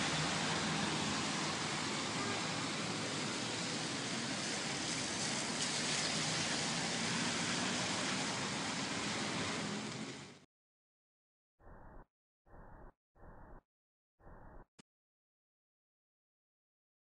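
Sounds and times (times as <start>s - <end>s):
rain hissing: 0.0s - 10.4s
traffic on wet streets: 0.0s - 10.5s.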